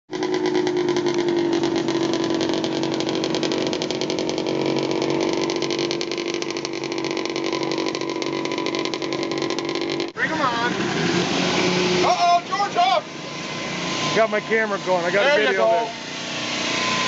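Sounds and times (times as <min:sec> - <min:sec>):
snowmobile engines running: 0:00.1 - 0:17.0.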